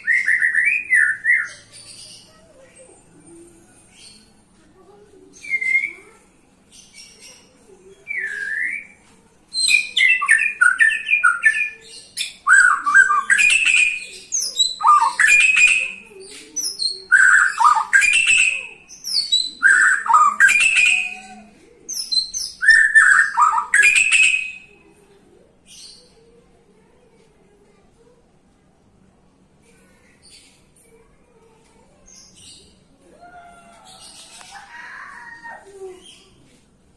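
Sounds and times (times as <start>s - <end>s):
bird singing: 0.0s - 2.3s, 9.6s - 24.7s.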